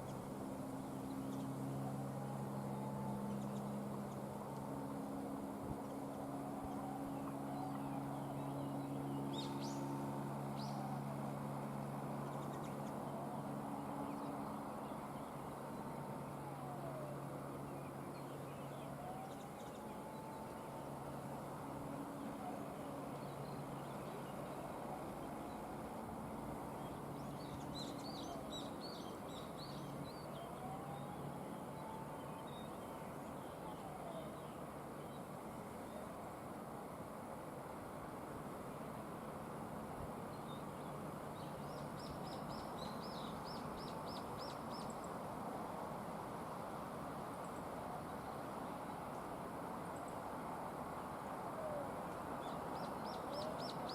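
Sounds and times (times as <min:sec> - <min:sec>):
low steady hum: 0:00.0 - 0:53.9.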